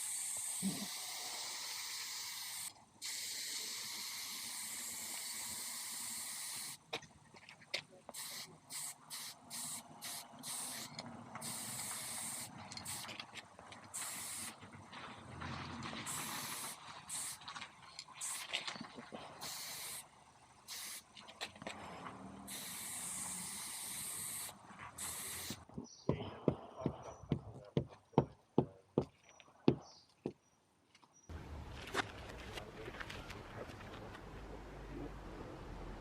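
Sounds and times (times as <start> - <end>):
spraying hiss: 0.0 - 6.8, 8.1 - 13.2, 13.9 - 14.6, 16.0 - 17.5, 18.2 - 18.6, 19.4 - 21.1, 22.4 - 25.7.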